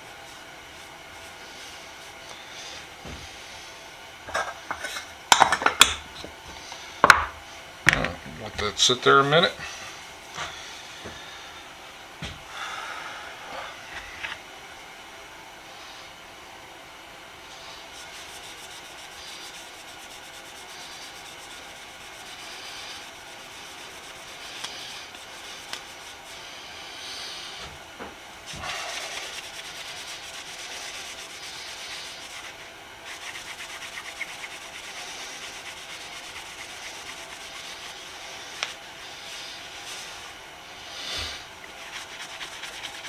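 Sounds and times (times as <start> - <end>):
cloth rubbing on screwdriver: 18.0 - 26.4, 28.5 - 40.4, 41.7 - 43.0.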